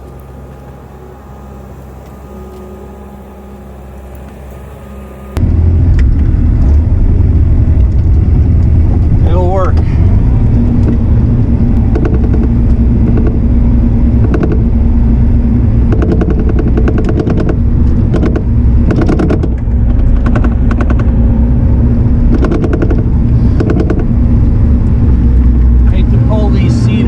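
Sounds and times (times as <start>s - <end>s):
diesel engine running under load: 0.0s - 27.0s
rapid clicking and clattering: 11.8s - 13.4s, 14.2s - 14.7s, 15.8s - 21.2s, 22.2s - 24.2s.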